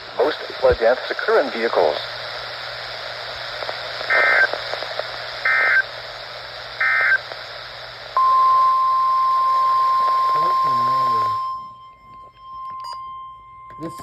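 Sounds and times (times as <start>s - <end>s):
steady warning alarm tone: 8.2s - 14.0s
screeching digital data bursts: 9.3s - 11.4s.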